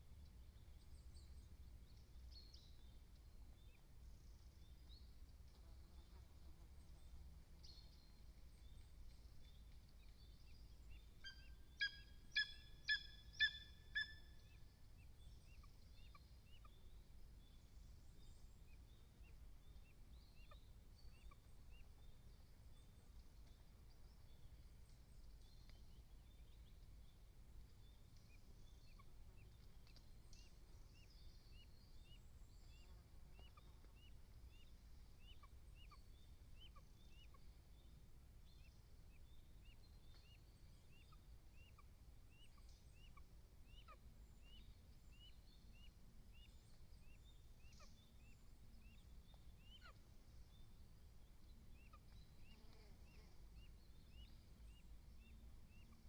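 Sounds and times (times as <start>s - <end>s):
faint songbird chirping: 0.0s - 56.0s
eagle calling: 11.2s - 14.4s.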